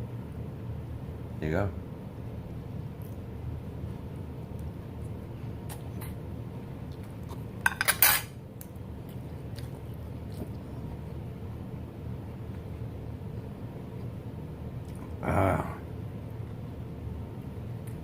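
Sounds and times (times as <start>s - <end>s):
low background hum: 0.0s - 18.0s
utensils clinking against plate: 7.6s - 8.3s.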